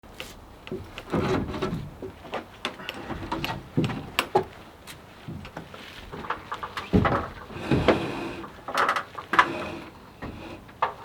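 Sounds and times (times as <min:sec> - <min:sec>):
sharp knocks and clicks: 0:00.7 - 0:04.6.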